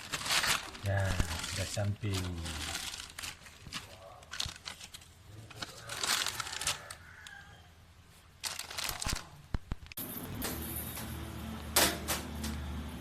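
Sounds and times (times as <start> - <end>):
plastic packaging crinkling: 0.0 - 7.4, 8.3 - 10.4.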